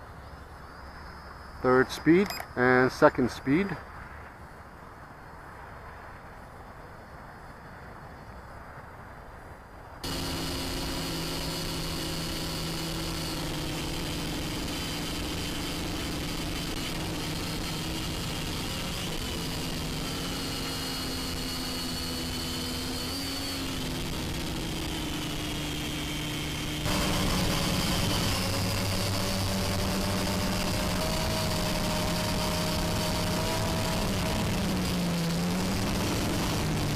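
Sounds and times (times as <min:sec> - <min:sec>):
toy drone motors whining: 0:10.0 - 0:36.9.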